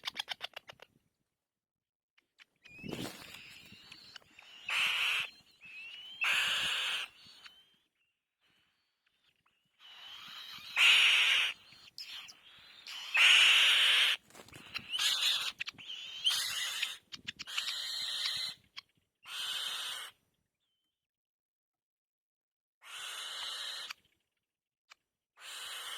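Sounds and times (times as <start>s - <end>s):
bird chick begging calls: 2.8s - 7.6s, 9.8s - 18.6s, 19.3s - 20.1s, 22.8s - 24.0s, 25.4s - 25.9s.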